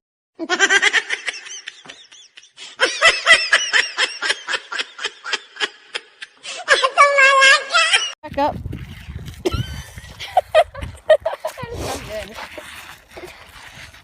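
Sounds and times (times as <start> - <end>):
high-pitched laughter: 0.4 - 8.2.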